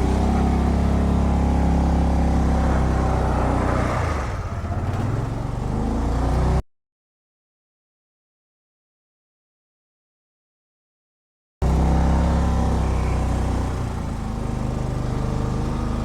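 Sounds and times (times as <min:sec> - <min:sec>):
utility vehicle engine revving: 0:00.0 - 0:06.6, 0:11.6 - 0:16.0.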